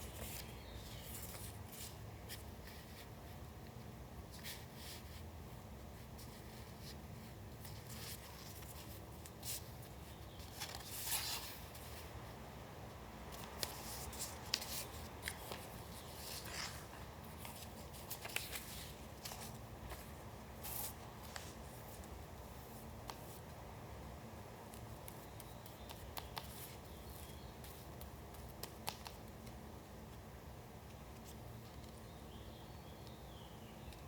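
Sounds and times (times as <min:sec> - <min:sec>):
paper rustling and crinkling: 0:06.2 - 0:12.1, 0:13.3 - 0:23.4.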